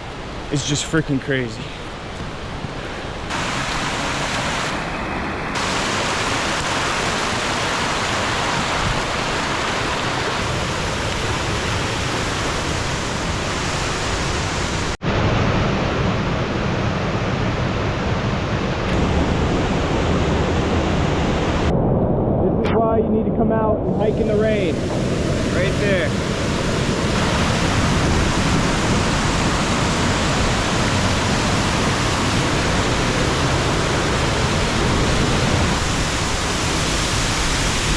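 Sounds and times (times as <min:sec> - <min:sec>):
waterfall cascading: 0:00.0 - 0:15.0, 0:23.5 - 0:37.9.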